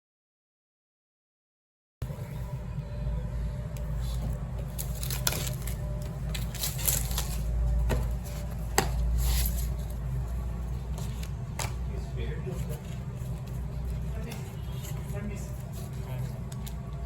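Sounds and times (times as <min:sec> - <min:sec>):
steady low rumble: 0:02.0 - 0:14.8
packaging rustling and sliding: 0:03.9 - 0:11.4
clicks and taps of packaging: 0:11.0 - 0:11.8.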